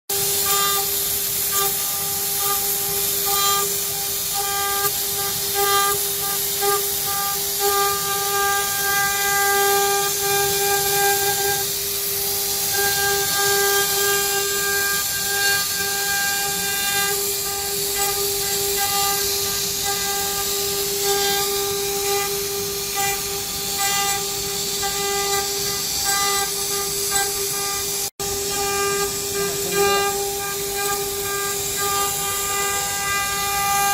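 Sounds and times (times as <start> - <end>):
router spindle whine and hiss: 0.1 - 33.9.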